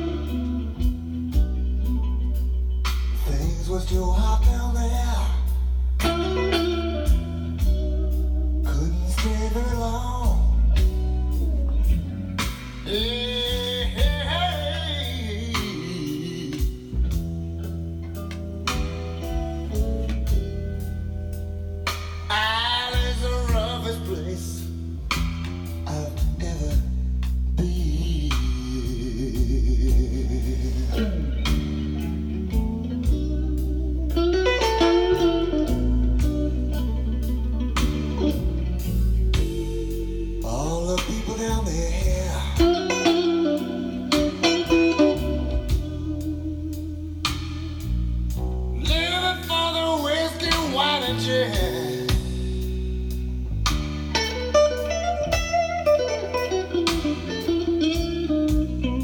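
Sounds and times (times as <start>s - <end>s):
bass line: 0.0s - 59.0s
blues-rock electric guitar: 0.0s - 59.0s.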